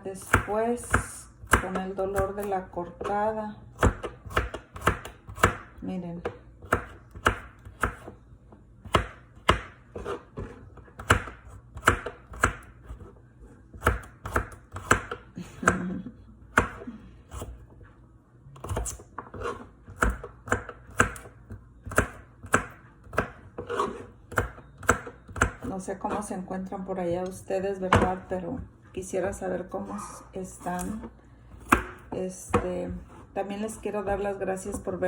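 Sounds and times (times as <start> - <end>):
knife chopping garlic: 0.1 - 8.2, 8.8 - 13.1, 13.7 - 17.6, 18.6 - 26.2, 30.6 - 35.0.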